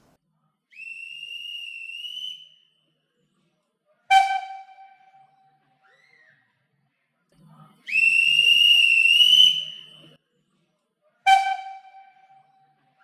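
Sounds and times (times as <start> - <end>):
steam locomotive whistle: 7.9 - 9.9, 11.3 - 12.4.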